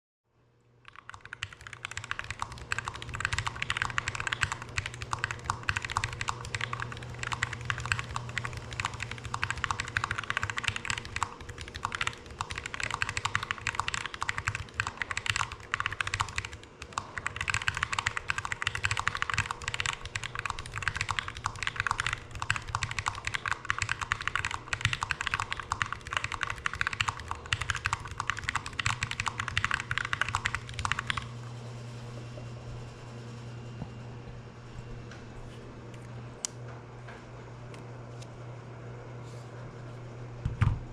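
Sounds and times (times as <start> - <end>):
mechanical keyboard typing: 0.8 - 31.3.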